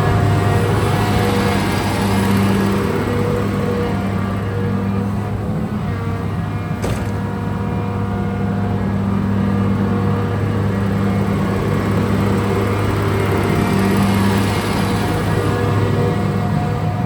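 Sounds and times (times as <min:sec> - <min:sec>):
excavator diesel engine running: 0:00.0 - 0:17.0
brief knock: 0:06.8 - 0:07.2.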